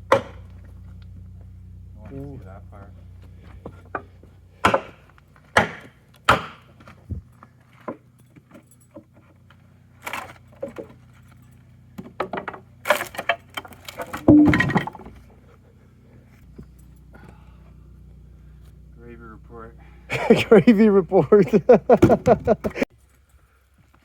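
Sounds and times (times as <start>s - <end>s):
faint low hum: 0.0s - 24.0s
hard objects knocking and clattering: 12.0s - 15.2s.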